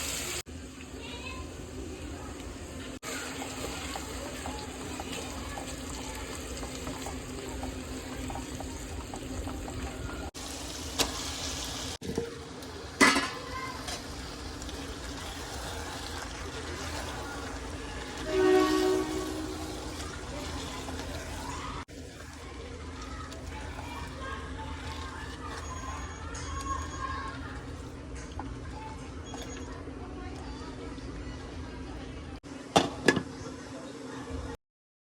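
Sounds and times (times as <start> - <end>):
cooking pot hissing: 0.0 - 28.0.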